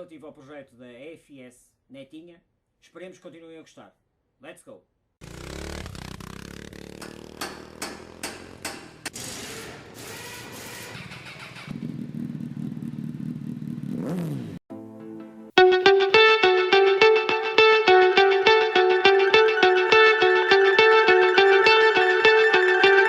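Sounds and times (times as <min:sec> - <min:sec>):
distorted electric guitar music: 0:15.6 - 0:23.0.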